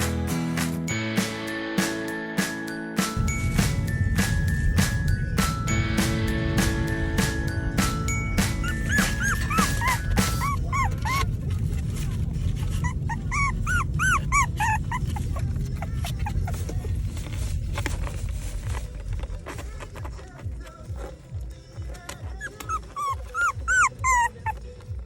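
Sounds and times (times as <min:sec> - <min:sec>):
music: 0:00.0 - 0:12.1, 0:13.3 - 0:25.0
puppy whimpering and yipping: 0:07.8 - 0:11.7, 0:12.4 - 0:17.1, 0:22.2 - 0:24.9.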